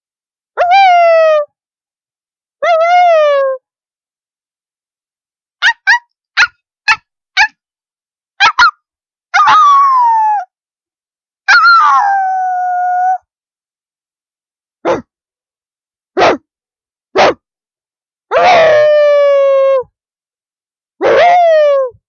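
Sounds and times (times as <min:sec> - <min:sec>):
person imitating dog barks: 0:05.6 - 0:07.5, 0:08.4 - 0:08.8, 0:14.8 - 0:15.1, 0:16.2 - 0:16.4, 0:17.1 - 0:17.4, 0:18.3 - 0:19.8, 0:21.0 - 0:22.0
person howling: 0:11.6 - 0:13.2, 0:18.3 - 0:19.9.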